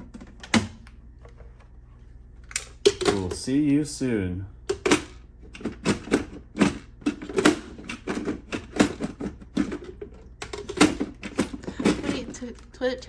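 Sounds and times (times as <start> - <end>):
hard clicks and knocks: 4.7 - 12.6.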